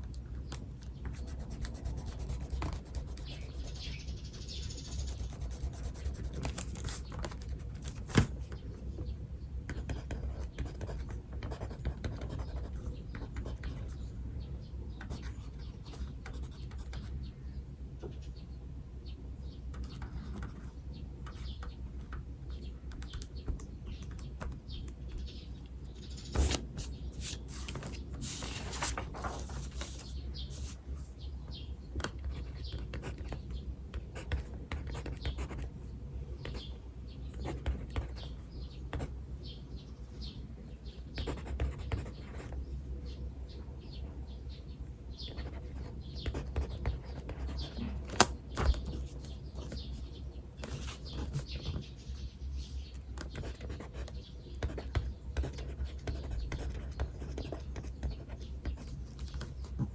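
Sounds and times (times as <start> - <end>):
birds chirping: 0.4 - 9.5, 12.1 - 59.9
pen scratching on paper: 1.1 - 8.5, 9.8 - 13.9, 41.2 - 42.6, 50.6 - 51.5, 53.3 - 59.9.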